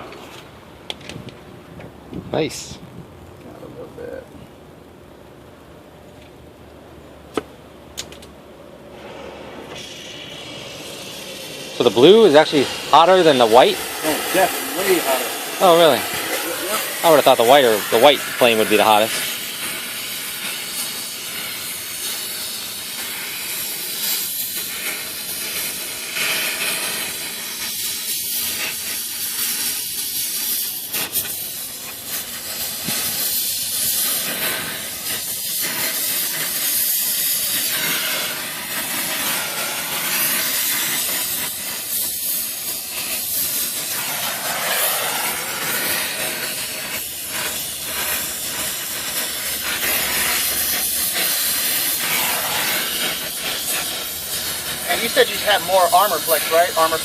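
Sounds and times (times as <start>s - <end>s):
torch flame hissing: 8.7s - 57.0s.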